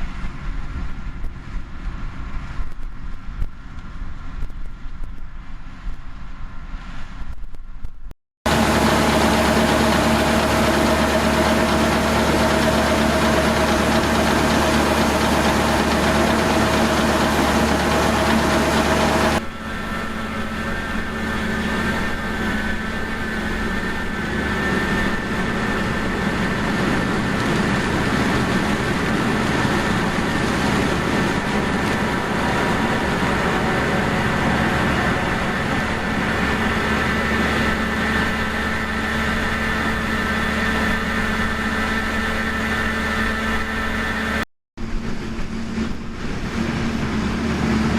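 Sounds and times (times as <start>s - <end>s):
diesel machinery running: 8.5s - 47.9s
high engine whine: 8.5s - 47.9s.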